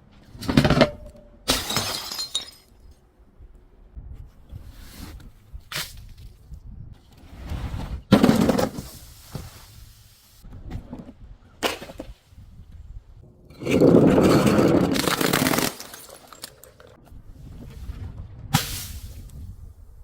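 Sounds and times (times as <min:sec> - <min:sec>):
glass shattering: 0:01.5 - 0:02.8, 0:14.9 - 0:16.8
glass cracking: 0:14.9 - 0:16.9.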